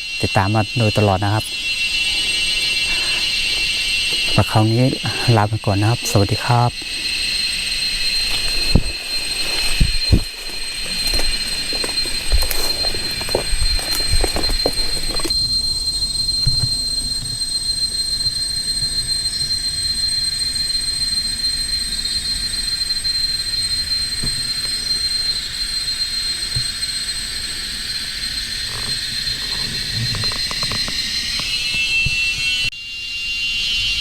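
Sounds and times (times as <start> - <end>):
high hiss: 0.0 - 15.2
high whines: 0.0 - 16.2
insects buzzing: 0.0 - 33.8.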